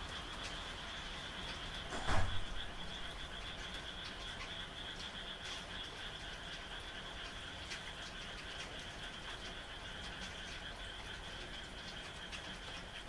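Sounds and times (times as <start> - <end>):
frogs calling: 0.0 - 13.0
light rain falling: 0.0 - 13.0
raindrops ticking: 0.0 - 13.0.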